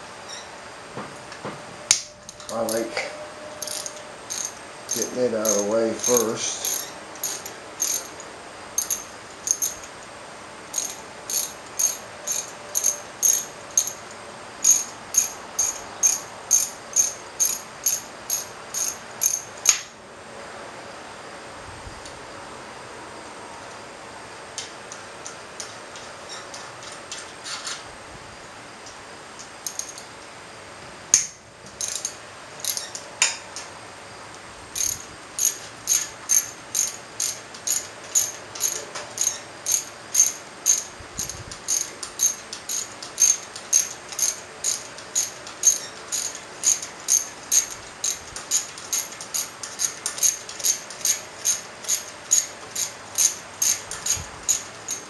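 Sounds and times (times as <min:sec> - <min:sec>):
hand ratchet clicking: 0:03.6 - 0:08.2, 0:08.8 - 0:09.9, 0:10.7 - 0:14.0, 0:14.6 - 0:19.9, 0:29.6 - 0:30.1, 0:31.1 - 0:33.0, 0:34.8 - 0:55.0.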